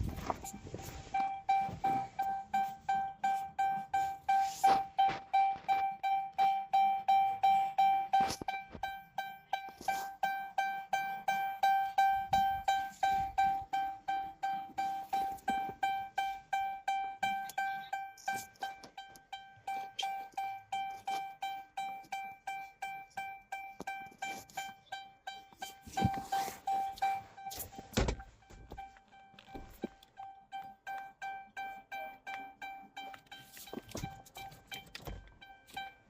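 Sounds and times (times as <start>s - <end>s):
car warning chime dinging: 0.0s - 36.0s.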